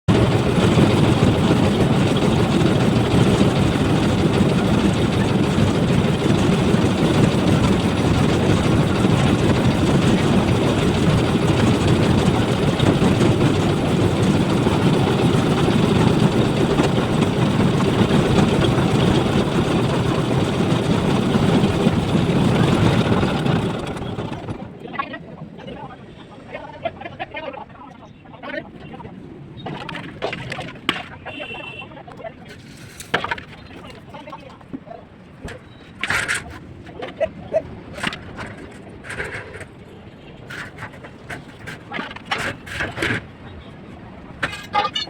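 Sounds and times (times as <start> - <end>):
loud low engine running: 0.0 - 24.8.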